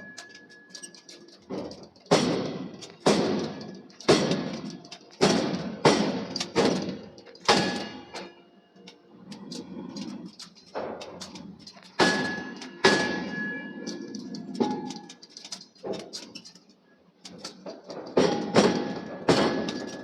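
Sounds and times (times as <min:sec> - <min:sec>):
hammer striking steel: 0:00.0 - 0:08.4, 0:12.0 - 0:15.6, 0:18.0 - 0:20.0.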